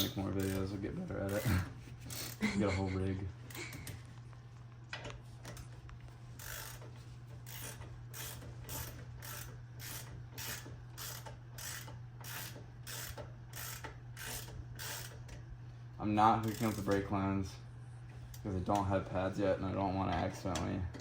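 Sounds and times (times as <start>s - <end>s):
ratchet wrench clicking: 0.0s - 1.4s, 6.4s - 15.3s, 16.4s - 17.1s.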